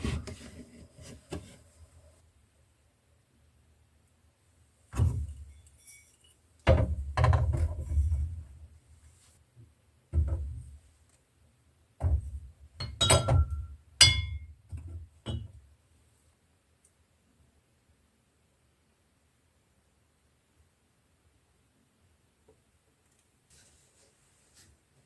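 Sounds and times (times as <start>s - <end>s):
glass containers thunking: 12.8s - 14.4s
glass clinks: 12.8s - 14.5s.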